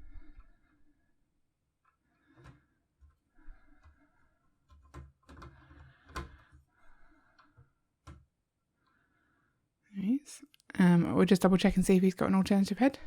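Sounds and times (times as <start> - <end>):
plastic parts clicking: 4.6 - 6.7.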